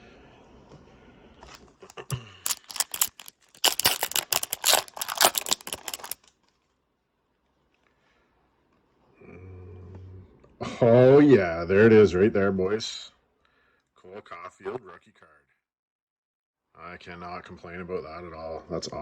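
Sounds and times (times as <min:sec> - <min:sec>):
trading cards handled: 0:01.9 - 0:06.2.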